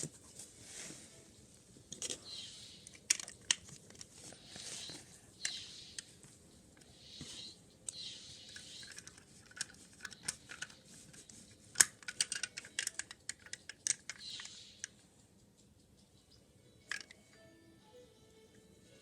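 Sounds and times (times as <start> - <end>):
plastic bricks clicking: 2.8 - 4.1, 7.9 - 10.8, 11.7 - 14.9, 16.9 - 17.2.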